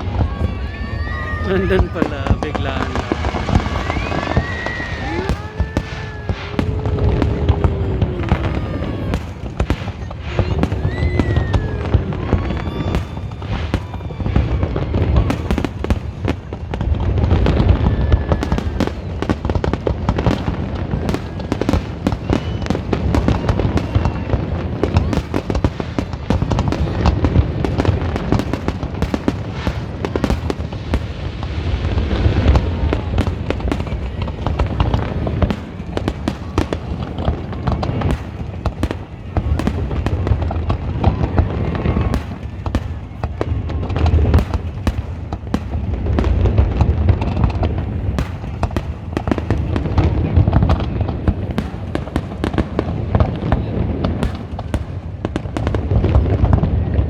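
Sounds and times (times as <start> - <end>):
firework bangs and crackling: 0.0 - 57.0
steady low rumble: 2.9 - 10.9.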